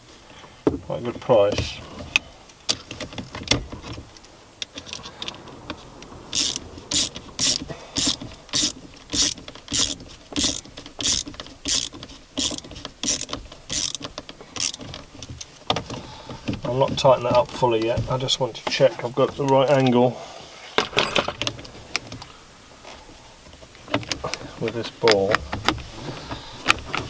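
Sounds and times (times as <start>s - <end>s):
ratchet spanner clicking: 6.3s - 15.0s.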